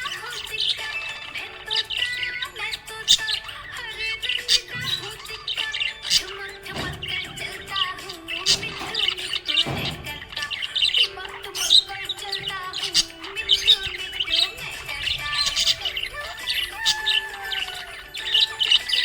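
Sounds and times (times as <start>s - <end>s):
background music with held notes: 0.0s - 19.0s
budgies chirping and chattering: 0.0s - 19.0s.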